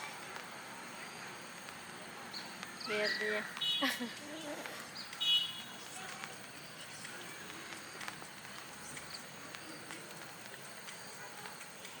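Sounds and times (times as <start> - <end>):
faint ticks: 3.5 - 12.0.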